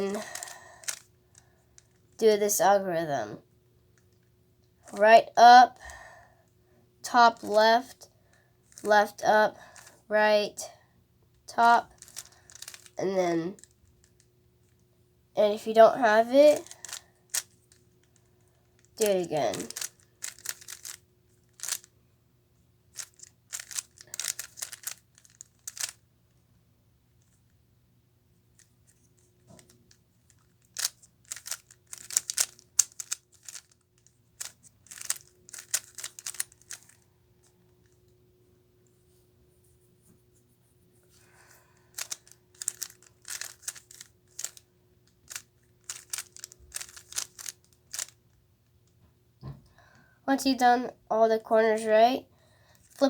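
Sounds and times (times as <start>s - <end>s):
puzzle cube plastic clicks: 0.1s - 2.2s, 8.6s - 8.9s, 9.8s - 10.0s, 11.7s - 13.0s, 13.6s - 14.9s, 16.5s - 21.9s, 22.9s - 26.0s, 28.6s - 37.0s, 41.8s - 48.4s.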